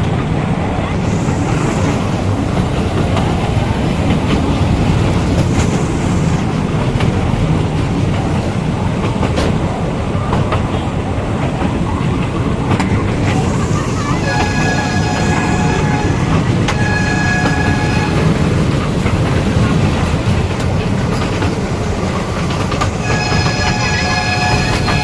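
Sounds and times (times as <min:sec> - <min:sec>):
wheels clicking on rail joints: 0:01.0 - 0:25.0
toy train rumbling: 0:12.1 - 0:25.0.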